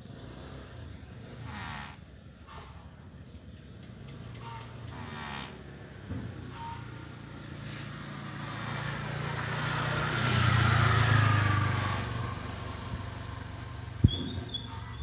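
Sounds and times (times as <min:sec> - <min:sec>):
vehicle passing by: 0:03.8 - 0:15.0.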